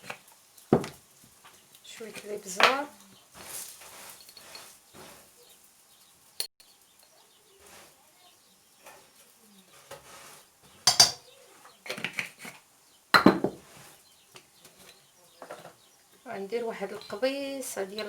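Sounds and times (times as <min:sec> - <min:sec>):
containers and spoon knocking on pot: 0:00.0 - 0:01.0, 0:10.8 - 0:11.2, 0:13.1 - 0:13.6
rustle of handling: 0:00.0 - 0:12.7, 0:13.6 - 0:18.0.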